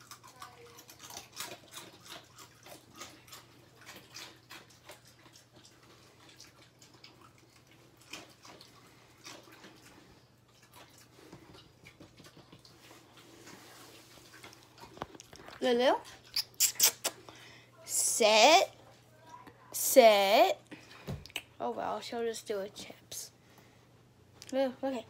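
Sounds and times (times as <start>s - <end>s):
dog crunching chips: 0.0s - 13.2s, 14.1s - 17.2s
mouth clicks: 16.3s - 17.2s.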